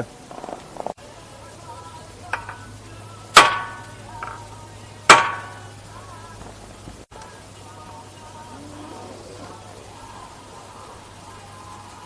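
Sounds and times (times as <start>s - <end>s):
hammer blows on metal: 3.3s - 4.4s, 5.1s - 5.7s.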